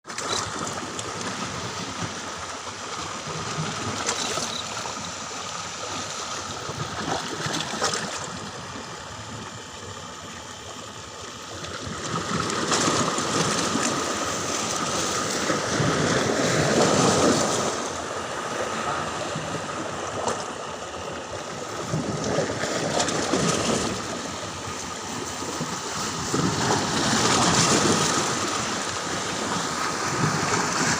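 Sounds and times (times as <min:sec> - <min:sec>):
water flowing and splashing: 0:00.1 - 0:30.9.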